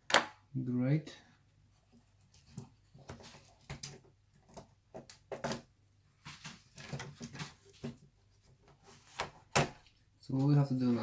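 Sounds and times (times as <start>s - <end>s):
clicks and knocks of laptop parts: 2.5s - 5.7s, 9.2s - 9.9s.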